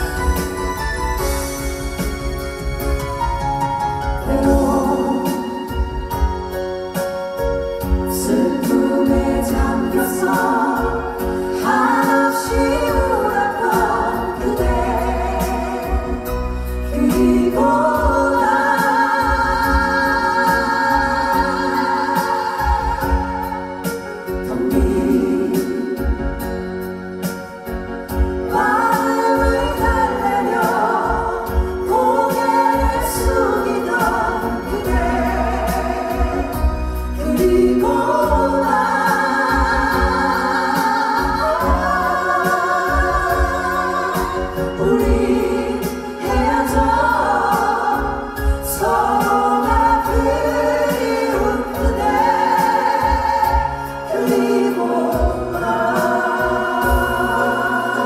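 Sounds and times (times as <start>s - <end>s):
instrumental accompaniment: 0.0s - 58.0s
female group singing in harmony: 4.2s - 6.6s, 7.6s - 26.6s, 28.0s - 58.0s.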